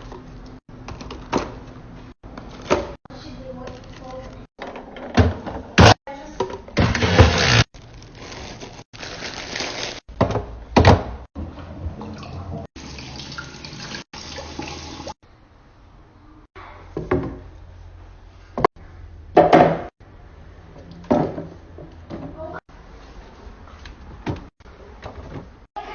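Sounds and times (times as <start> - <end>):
running water: 11.9 - 15.2.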